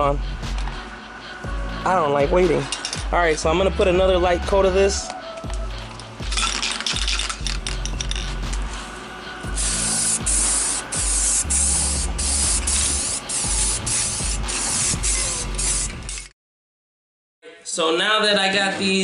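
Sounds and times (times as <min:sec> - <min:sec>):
aerosol spray can hissing: 0:09.4 - 0:16.3.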